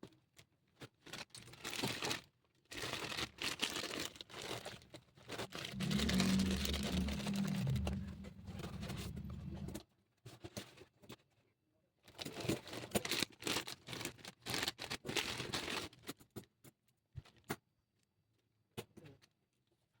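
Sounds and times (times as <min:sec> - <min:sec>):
packaging rustling and crinkling: 0:05.4 - 0:09.8.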